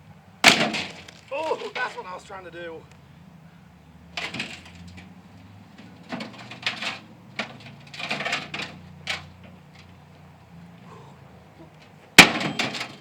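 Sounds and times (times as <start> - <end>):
metal and plastic parts clattering: 4.2 - 5.1, 5.8 - 10.0, 11.8 - 13.0.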